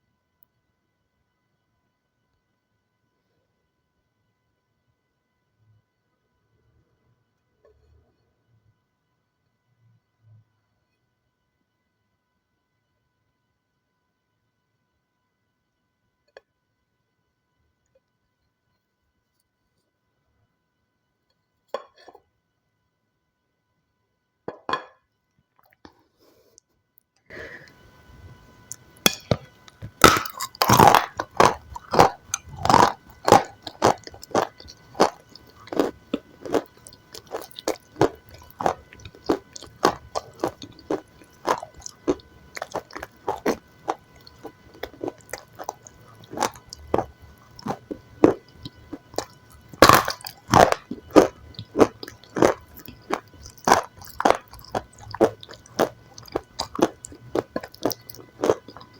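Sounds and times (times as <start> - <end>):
crunchy food chewing: 27.3 - 58.9.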